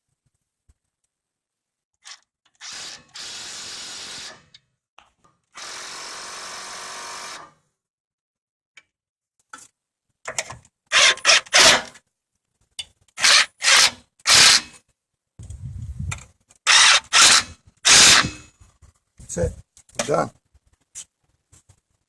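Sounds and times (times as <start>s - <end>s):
power tool spinning nut: 2.0s - 4.4s, 10.9s - 11.8s, 13.2s - 14.7s, 16.7s - 18.4s.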